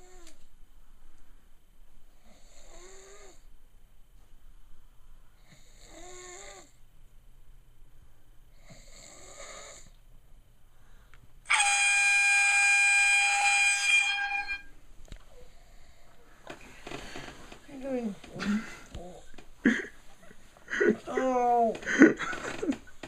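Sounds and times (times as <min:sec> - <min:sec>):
woman snoring softly: 0:00.0 - 0:00.4, 0:02.2 - 0:03.5, 0:05.4 - 0:06.8, 0:08.6 - 0:10.0
air horn from phone speaker: 0:11.5 - 0:14.8.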